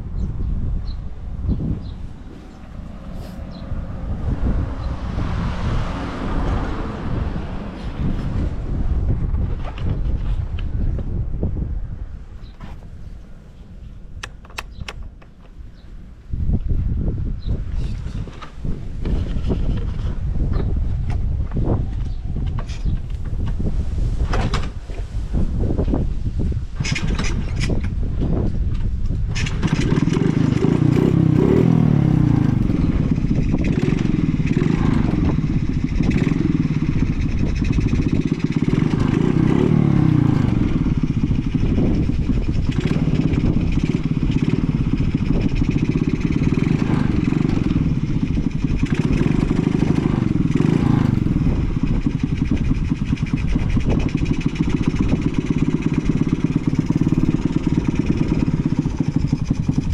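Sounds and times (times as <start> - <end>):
small engine fast idle: 29.3 - 59.9.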